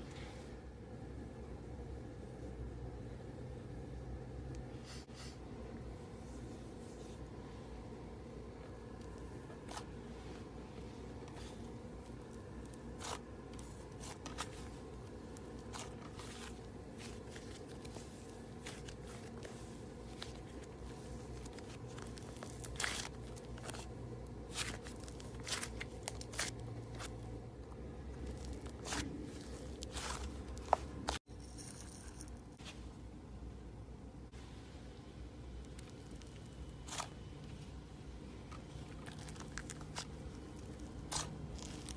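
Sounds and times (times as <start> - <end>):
low steady hum: 0.0 - 41.9.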